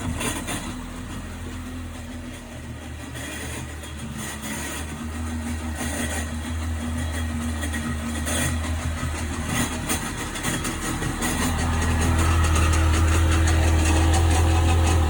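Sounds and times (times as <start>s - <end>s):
strange mechanical noise: 0.0s - 15.0s
watercraft engine running: 0.0s - 15.0s.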